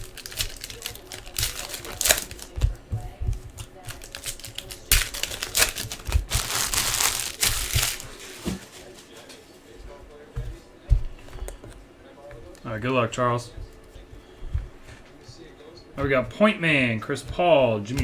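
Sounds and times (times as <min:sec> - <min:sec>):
plastic wrappers crinkling and tearing: 0:00.0 - 0:02.8, 0:03.6 - 0:09.4
continuous rustling: 0:00.0 - 0:18.0.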